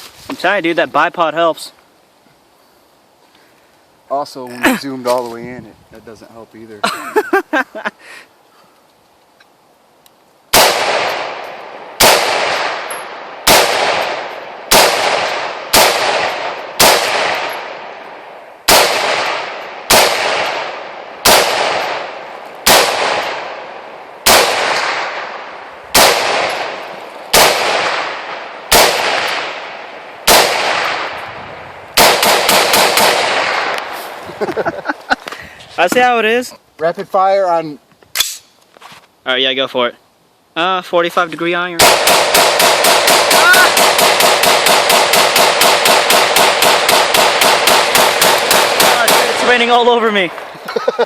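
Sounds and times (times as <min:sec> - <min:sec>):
rifle shots echoing: 0:10.5 - 0:31.3, 0:31.9 - 0:34.0, 0:41.8 - 0:50.5.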